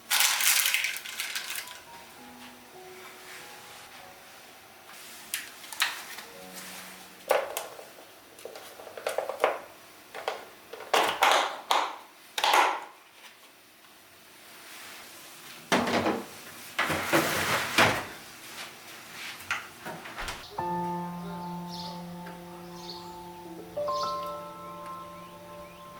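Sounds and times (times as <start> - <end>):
scraping and rustling: 16.8 - 19.4.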